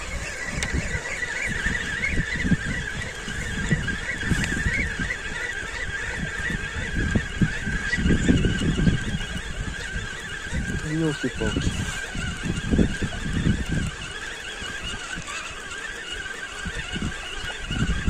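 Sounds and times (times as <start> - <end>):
wind buffeting microphone: 0.0 - 18.0.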